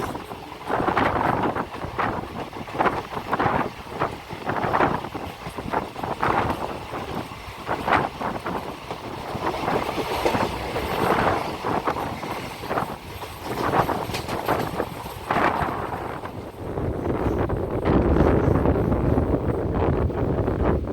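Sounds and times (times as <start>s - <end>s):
wheels clattering over rails: 0.0s - 16.6s
train rumble: 0.0s - 20.9s.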